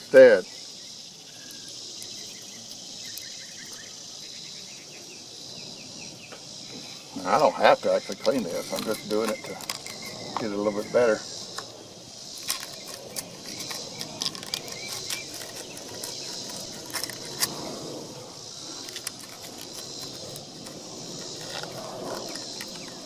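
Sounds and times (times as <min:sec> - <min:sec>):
insects chirring: 0:00.0 - 0:23.0
sandpaper scraping in socket: 0:12.4 - 0:17.6, 0:18.8 - 0:23.0.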